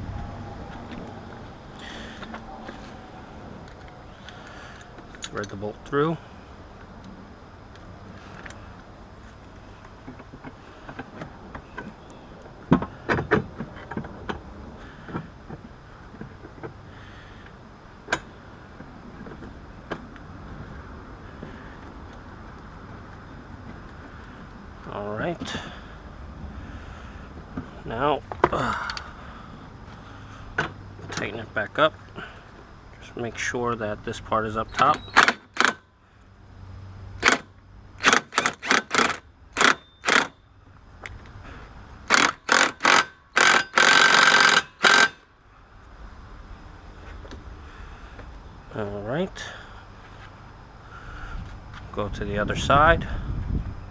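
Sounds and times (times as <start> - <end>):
low background rumble: 0.0 - 34.8
ratchet wrench clicking: 34.8 - 35.8, 37.2 - 40.4, 42.1 - 45.2.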